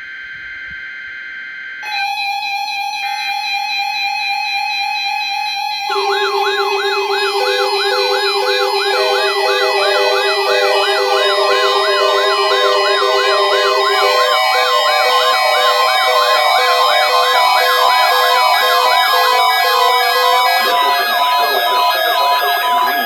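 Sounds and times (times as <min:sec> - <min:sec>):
rows of beeps: 0:05.9 - 0:15.0, 0:19.9 - 0:23.0
siren-like sweeps: 0:05.9 - 0:23.0
steady electronic tones: 0:05.9 - 0:23.0.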